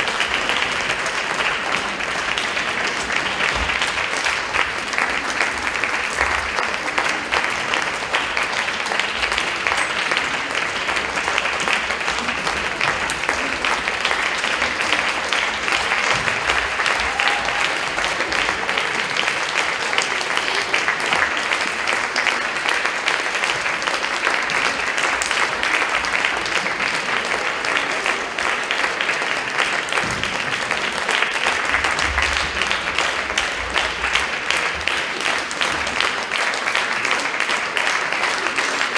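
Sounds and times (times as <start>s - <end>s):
audience applauding: 0.0s - 38.9s.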